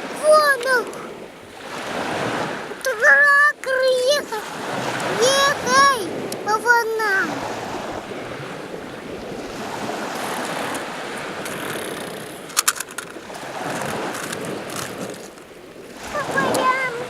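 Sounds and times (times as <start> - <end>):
sea waves washing onto shore: 0.0 - 17.0
clatter of sharp clicks: 11.4 - 15.4.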